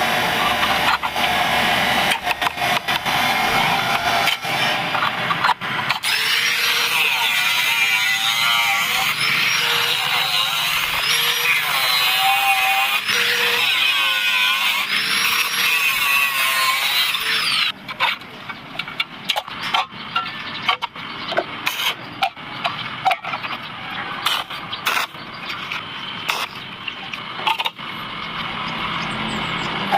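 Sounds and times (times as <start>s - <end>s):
power tool cutting metal: 0.0s - 5.0s, 5.9s - 17.8s.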